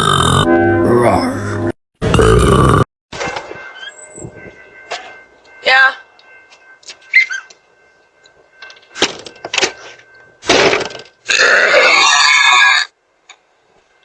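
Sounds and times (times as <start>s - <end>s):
woman burping: 2.0s - 2.9s.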